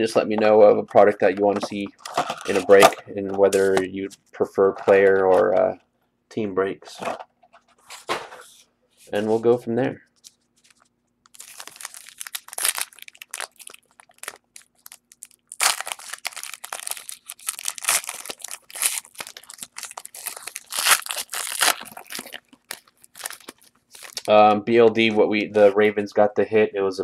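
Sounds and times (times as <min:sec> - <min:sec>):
plastic packaging crinkling and tearing: 0:02.0 - 0:03.8, 0:10.2 - 0:24.5.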